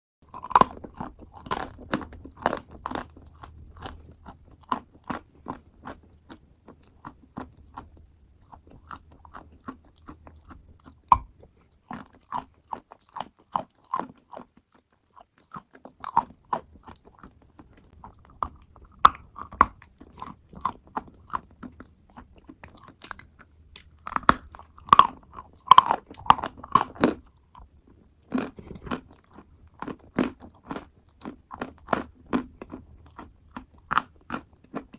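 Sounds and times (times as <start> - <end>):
chewing and biting clay: 0.2 - 34.9.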